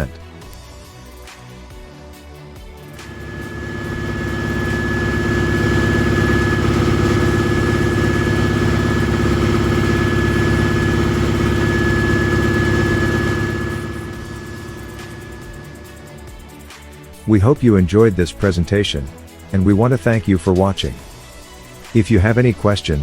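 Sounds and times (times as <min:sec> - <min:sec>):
compressor engine running: 0:02.8 - 0:16.7
thin steady whine: 0:02.8 - 0:16.7.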